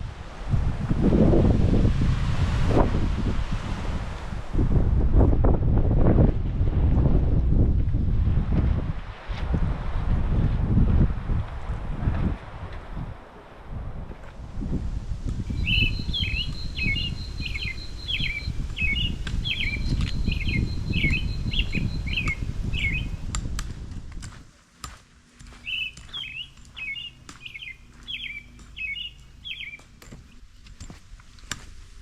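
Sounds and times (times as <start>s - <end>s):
low wind rumble on microphone: 0.0s - 32.0s
songbird singing: 15.3s - 23.3s, 25.5s - 30.7s.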